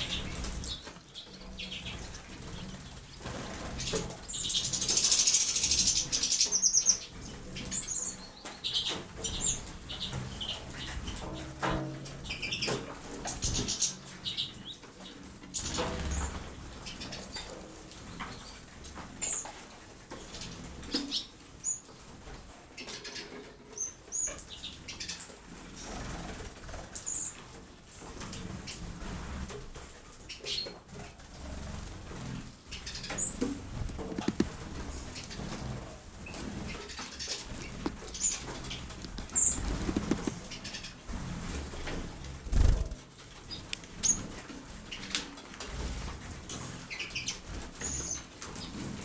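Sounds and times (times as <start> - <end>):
birds splashing wings in water: 31.5 - 43.0.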